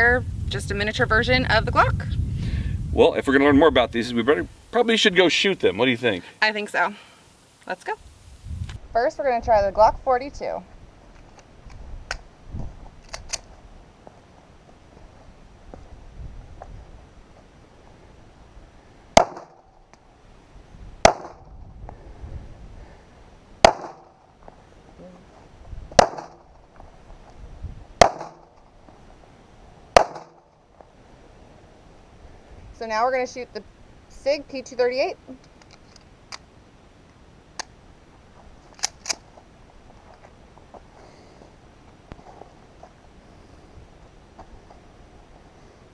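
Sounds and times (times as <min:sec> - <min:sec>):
pistol shots: 0:23.6 - 0:24.1, 0:28.0 - 0:28.4, 0:30.0 - 0:30.4.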